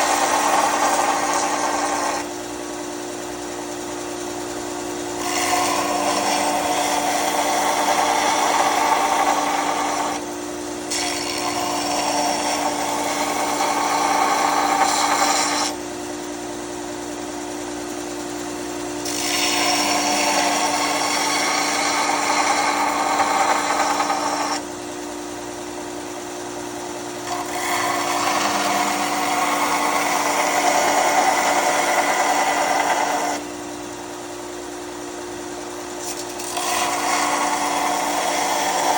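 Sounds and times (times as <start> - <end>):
steel grinding on belt: 0.0 - 2.5, 5.0 - 10.2, 10.9 - 15.8, 19.0 - 24.6, 27.2 - 33.4, 36.0 - 38.9
belt grinder motor hum: 0.0 - 38.9.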